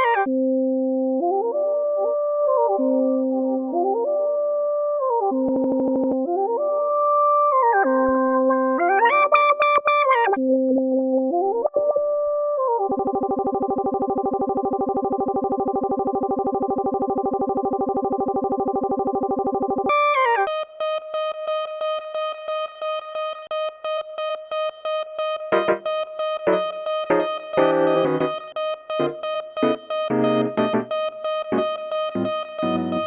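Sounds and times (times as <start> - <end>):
electronic dubstep music: 26.4 - 33.0.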